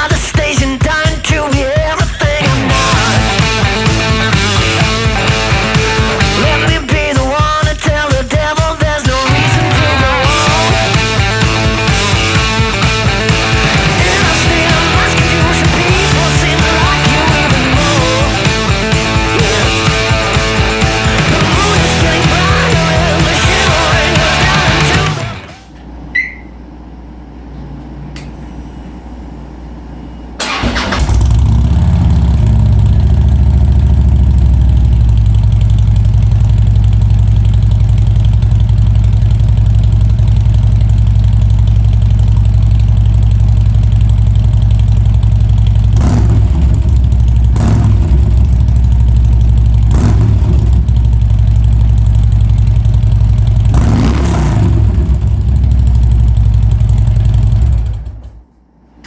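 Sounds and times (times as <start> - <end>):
motorcycle engine starting: 0.0 - 26.4, 30.4 - 59.0
motorcycle engine lumpy idle: 0.0 - 27.9, 30.4 - 59.0
motorcycle throttle blips: 25.6 - 26.8, 30.4 - 59.0.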